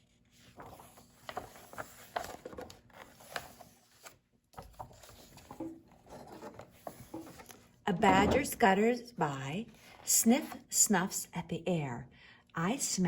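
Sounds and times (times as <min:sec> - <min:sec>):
paper rustling: 0:00.4 - 0:07.6.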